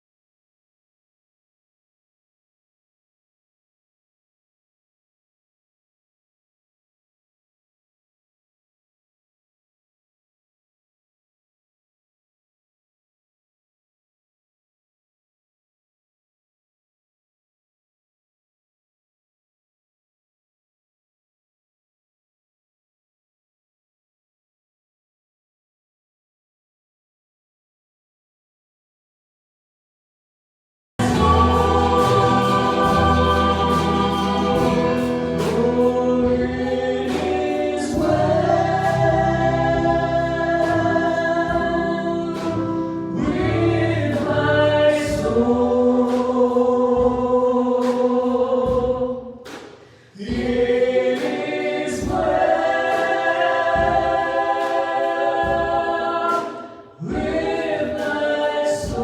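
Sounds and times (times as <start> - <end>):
choir singing gospel song: 31.0 - 59.0.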